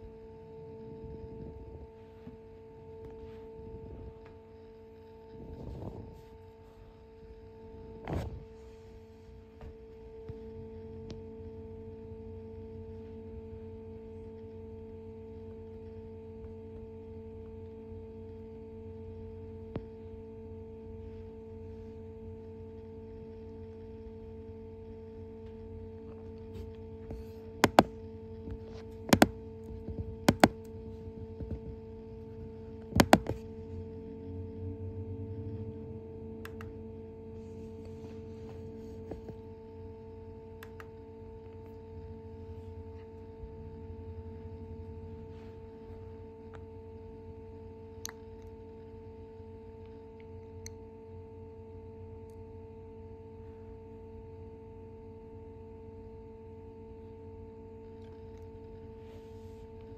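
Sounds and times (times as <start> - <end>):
hard drive spinning whine: 0.0 - 59.9
hard drive clicks: 25.4 - 34.0, 36.4 - 36.8.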